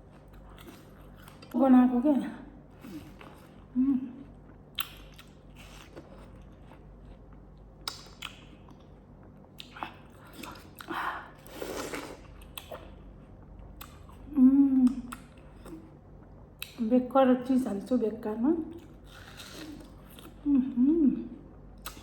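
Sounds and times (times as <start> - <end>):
person biting and chewing food: 0.0 - 1.5, 4.3 - 16.8, 18.8 - 20.4
wet mouth clicks: 4.8 - 5.3, 7.8 - 8.5, 14.8 - 15.8.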